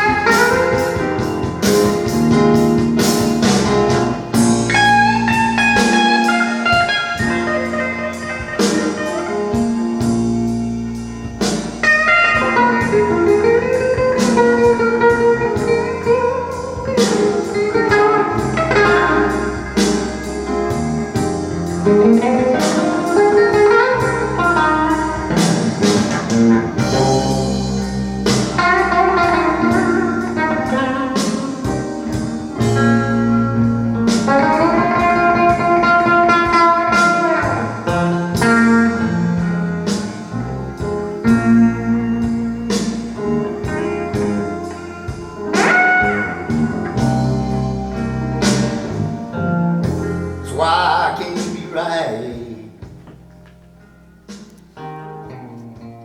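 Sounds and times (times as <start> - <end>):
bass guitar: 0.0 - 56.0
guitar solo with bending notes: 0.0 - 56.0
drum beat: 50.5 - 53.1.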